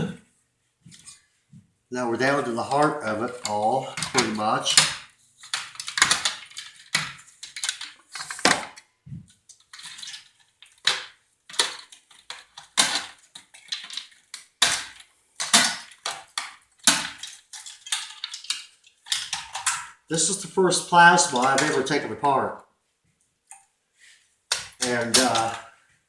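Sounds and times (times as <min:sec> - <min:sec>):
metal parts clinking and knocking: 0:02.7 - 0:08.8, 0:09.5 - 0:20.0, 0:21.3 - 0:22.0, 0:24.5 - 0:25.7.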